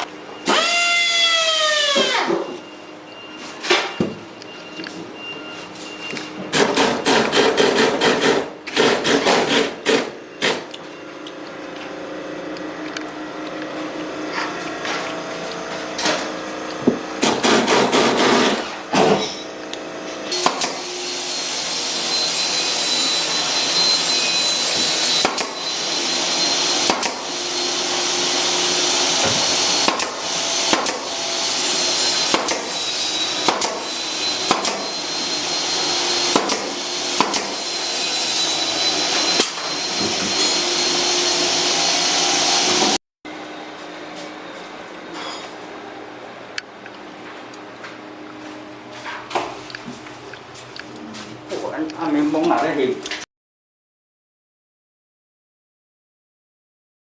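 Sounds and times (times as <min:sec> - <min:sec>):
impact driver hammering screws: 0:06.5 - 0:10.7, 0:29.1 - 0:31.1, 0:32.2 - 0:32.7, 0:33.4 - 0:35.0, 0:36.2 - 0:37.6.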